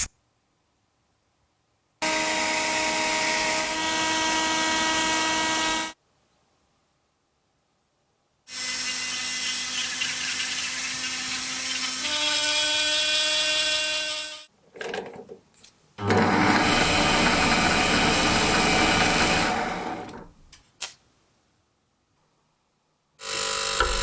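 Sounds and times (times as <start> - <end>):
small power tool motor whine: 2.0 - 6.0, 23.2 - 24.0.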